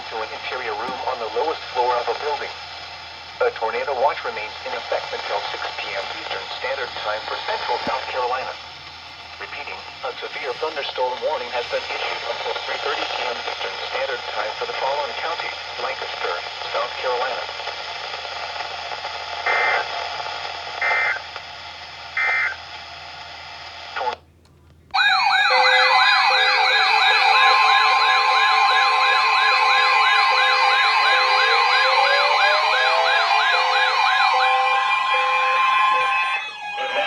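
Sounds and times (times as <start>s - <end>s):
radio hiss: 0.0s - 24.2s, 25.6s - 36.1s
electronic siren-like alarm: 25.0s - 37.0s
digital data bursts: 25.1s - 36.2s.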